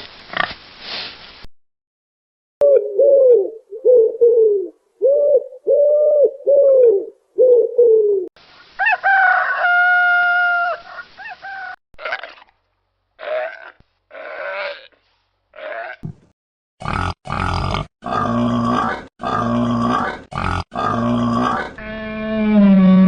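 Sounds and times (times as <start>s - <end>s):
chickens calling: 8.8s - 11.8s
rooster crowing: 8.8s - 11.8s.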